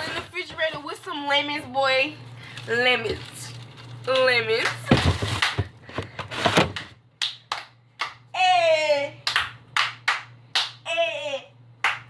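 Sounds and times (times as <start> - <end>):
hand claps: 6.8 - 8.2, 9.2 - 10.8.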